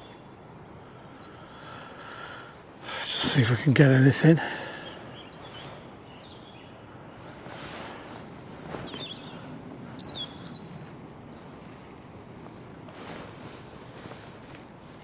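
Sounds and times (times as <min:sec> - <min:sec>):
bird song: 0:00.0 - 0:14.6
fast river rushing: 0:02.9 - 0:05.0.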